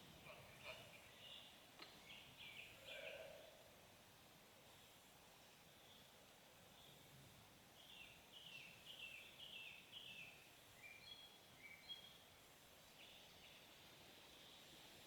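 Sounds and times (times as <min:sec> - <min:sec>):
background hiss: 0:00.0 - 0:15.0
bird song: 0:00.2 - 0:03.5, 0:07.7 - 0:12.2, 0:12.8 - 0:13.8.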